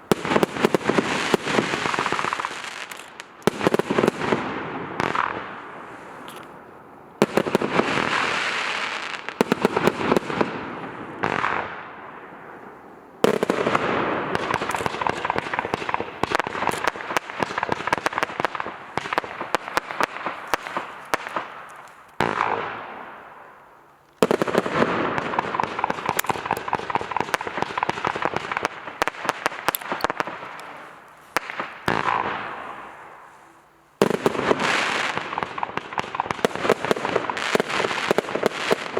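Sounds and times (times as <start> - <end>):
firework cake firing rapid volleys: 0.0 - 4.4, 13.4 - 21.8, 34.2 - 38.9.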